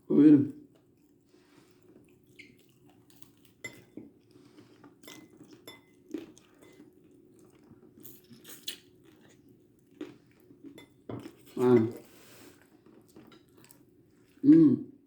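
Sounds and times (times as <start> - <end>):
cutlery and dishes clinking: 3.6 - 4.0.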